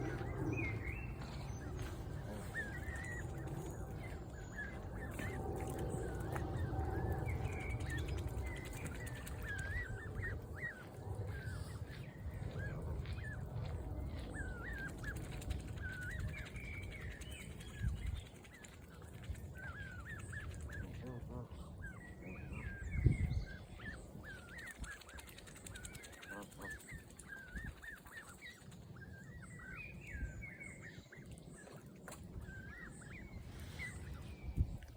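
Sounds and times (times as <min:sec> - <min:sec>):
waterfowl flock calling: 0:00.0 - 0:06.4, 0:25.8 - 0:28.4
birds calling: 0:00.0 - 0:34.9
steady low rumble: 0:00.0 - 0:34.9.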